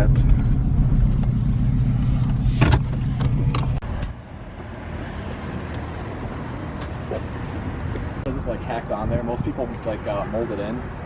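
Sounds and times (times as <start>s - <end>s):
car engine idling: 0.0s - 4.0s.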